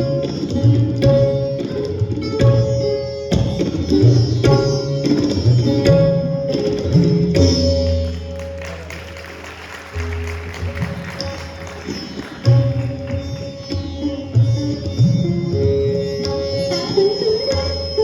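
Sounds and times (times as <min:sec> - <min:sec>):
plucked sitar melody: 0:00.0 - 0:18.0
tabla drumming: 0:00.0 - 0:18.0.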